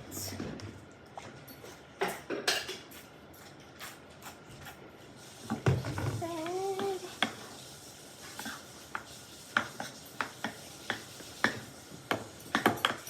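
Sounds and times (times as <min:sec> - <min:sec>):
slime stirred in a bowl: 0:06.2 - 0:12.6.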